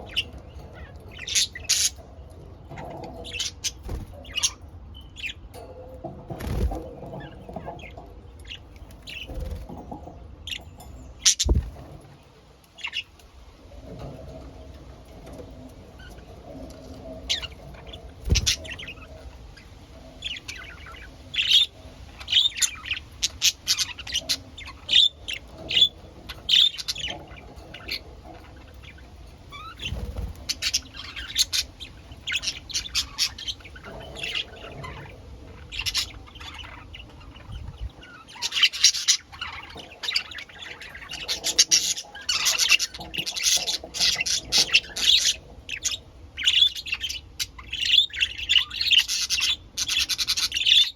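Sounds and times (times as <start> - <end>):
budgerigars chirping: 0.0 - 2.1, 16.0 - 50.9.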